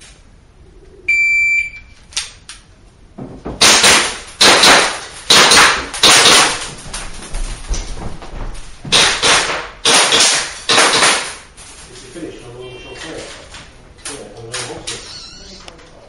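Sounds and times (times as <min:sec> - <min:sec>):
shot timer beep: 0:01.1 - 0:02.0
pistol shots ringing indoors: 0:03.6 - 0:06.7, 0:08.9 - 0:11.5.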